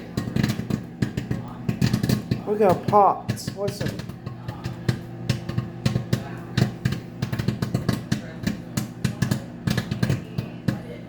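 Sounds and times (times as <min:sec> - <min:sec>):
microwave oven hum: 0:00.0 - 0:11.0
popcorn popping: 0:00.0 - 0:11.0.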